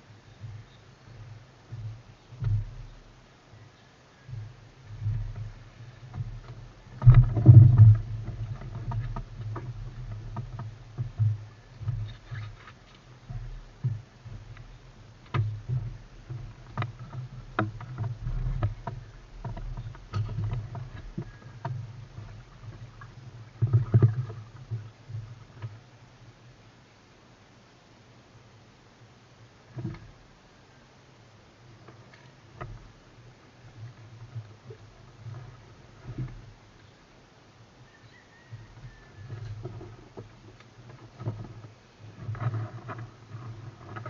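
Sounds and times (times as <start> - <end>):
low steady rumble: 0.0 - 44.0
paddle knocking against hull: 1.7 - 3.0, 4.3 - 25.8
paddle splashing water: 4.2 - 26.5, 31.6 - 44.0.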